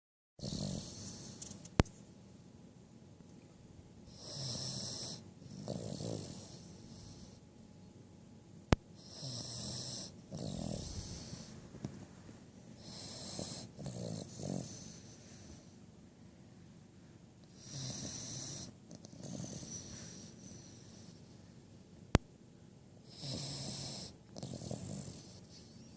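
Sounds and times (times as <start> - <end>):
puppy snoring: 0.4 - 1.8, 4.0 - 7.4, 9.0 - 12.0, 12.8 - 15.8, 17.4 - 21.4, 23.0 - 25.9.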